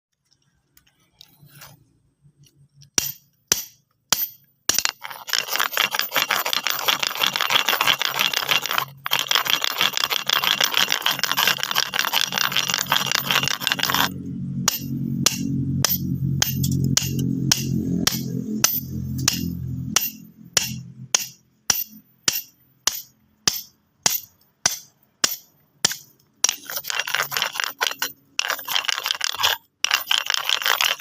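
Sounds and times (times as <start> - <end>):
low musical drone: 14.1 - 21.0.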